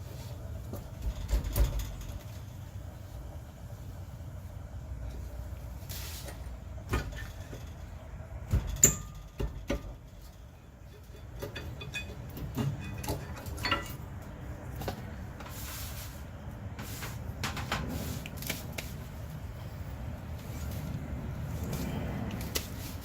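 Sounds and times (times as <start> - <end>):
metal tools clinking and knocking: 8.6 - 14.2.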